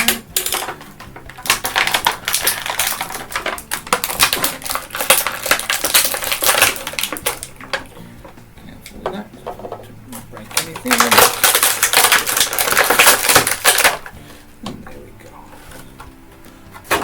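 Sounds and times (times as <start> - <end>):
toy packaging crinkling and rattling: 0.0 - 8.0, 9.6 - 14.2.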